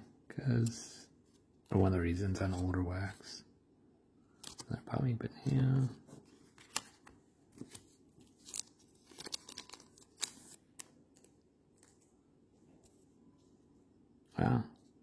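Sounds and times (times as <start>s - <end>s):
cards scraping and crackling: 4.4s - 4.7s, 5.5s - 12.1s.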